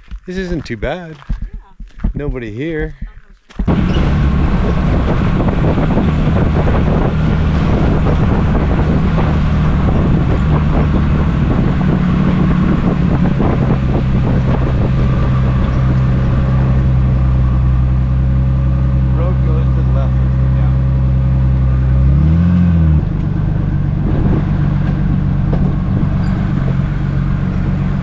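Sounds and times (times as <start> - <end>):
rattles and knocks from bumps: 0.9 - 4.9, 24.0 - 27.3
vehicle engine drone: 3.7 - 28.0.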